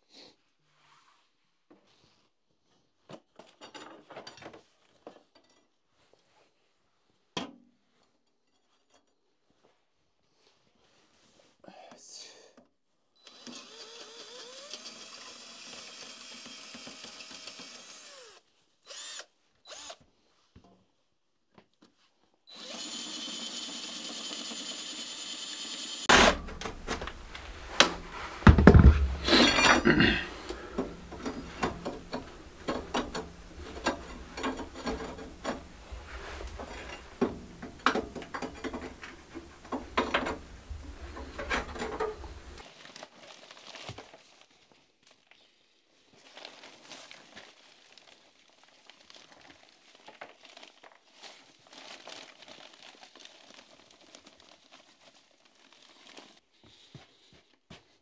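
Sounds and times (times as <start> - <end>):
knocks clatters and scrapes: 3.1 - 5.7, 26.1 - 42.6
power tool running: 22.5 - 29.8, 30.4 - 42.6
loud thumps: 26.1 - 29.8.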